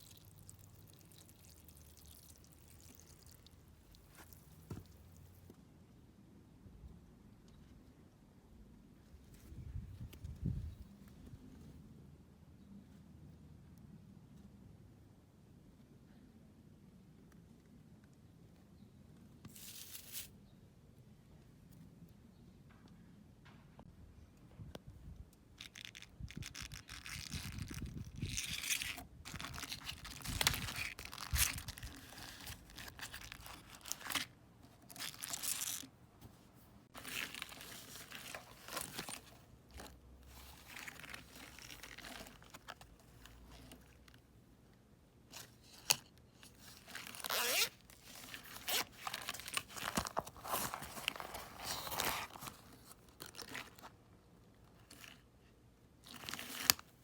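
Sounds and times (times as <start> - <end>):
packaging crinkling and tearing: 25.6 - 35.9, 37.0 - 44.0, 46.6 - 53.9, 56.0 - 57.0.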